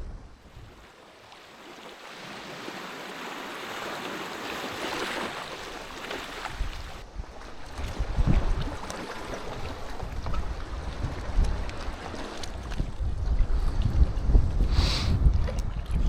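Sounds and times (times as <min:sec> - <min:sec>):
sea waves washing onto shore: 0:00.4 - 0:13.0.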